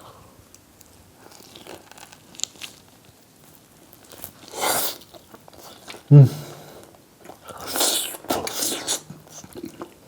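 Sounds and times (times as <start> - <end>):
crunching on crispy pork: 0.5 - 6.1.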